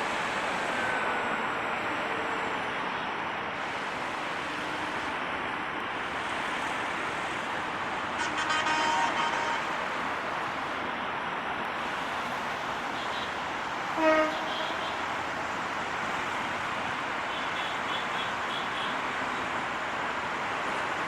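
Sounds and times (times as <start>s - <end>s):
short horn toot: 8.2s - 9.8s.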